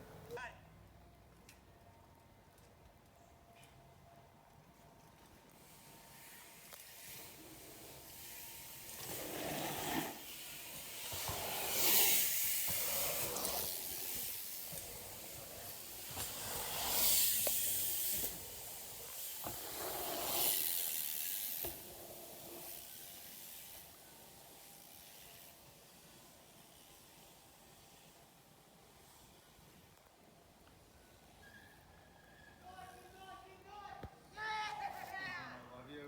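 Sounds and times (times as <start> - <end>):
bike tyres hissing on dirt: 5.6 - 30.0.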